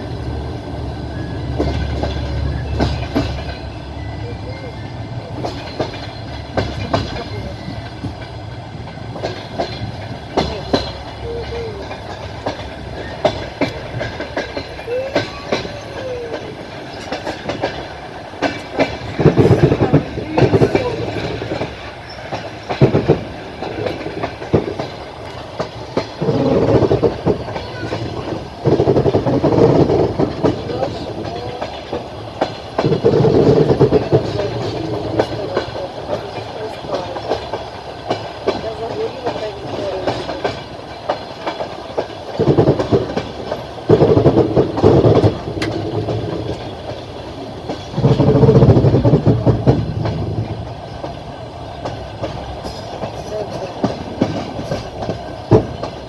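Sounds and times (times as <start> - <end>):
train rumble: 0.0 - 56.0
train wheels clattering over rail joints: 0.0 - 56.0.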